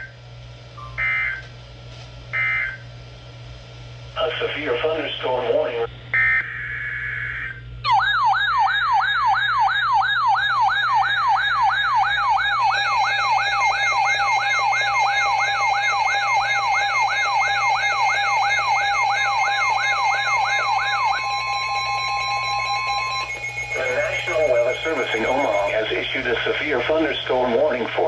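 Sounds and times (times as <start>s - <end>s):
rising whooping alert tone: 7.8s - 25.8s
steady two-tone attention signal: 11.4s - 27.1s
buzzy data burst: 12.8s - 27.4s.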